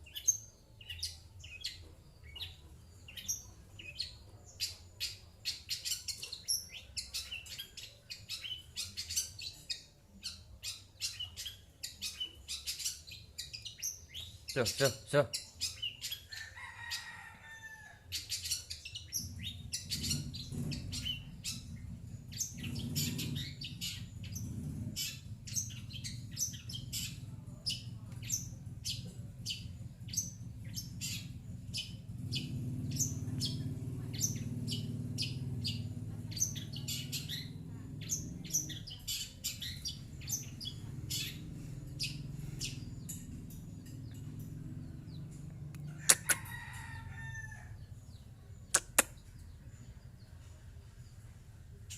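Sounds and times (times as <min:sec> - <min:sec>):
bird singing high chirps: 0:18.1 - 0:45.3
sharp double click: 0:48.8 - 0:49.2.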